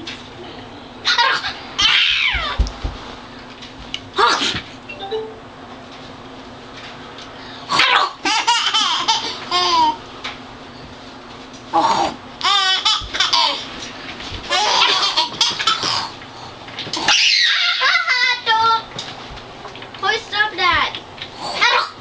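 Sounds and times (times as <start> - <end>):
young child laughing and squealing: 17.1 - 18.3.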